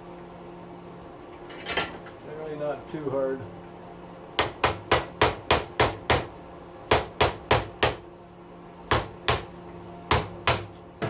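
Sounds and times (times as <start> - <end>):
hammer striking metal: 8.9 - 9.5, 10.1 - 10.8.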